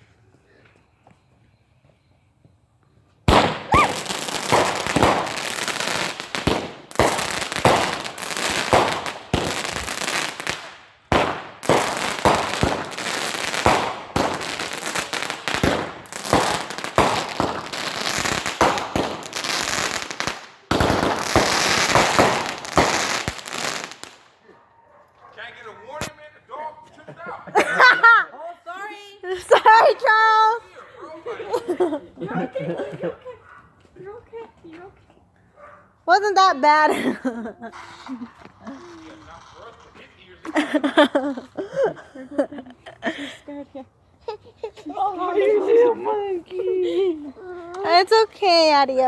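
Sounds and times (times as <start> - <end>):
fireworks bangs and crackling: 3.2 - 24.4, 37.7 - 41.2.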